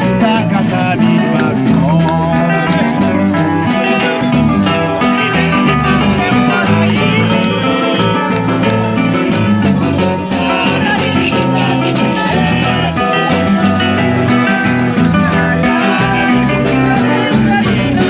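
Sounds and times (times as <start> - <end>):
person singing: 0.0 - 8.3, 9.9 - 18.0
band playing upbeat music: 0.0 - 18.0.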